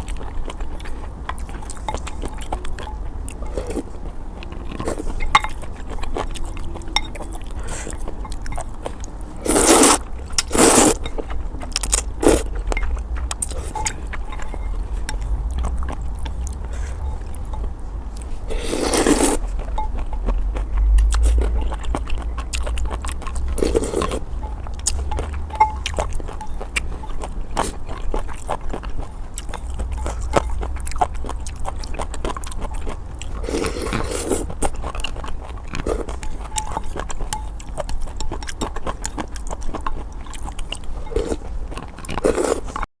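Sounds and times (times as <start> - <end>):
wet chewing: 0.0 - 42.9
slurping noodles: 9.4 - 11.0, 18.4 - 19.5, 23.6 - 24.2, 33.4 - 34.5.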